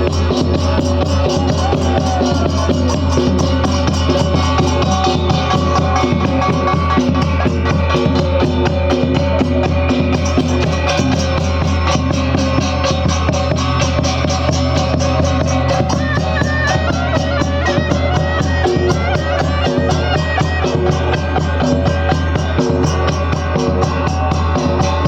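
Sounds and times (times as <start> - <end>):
fast steady drumming: 0.0 - 25.0
reedy wind instrument melody: 0.0 - 25.0.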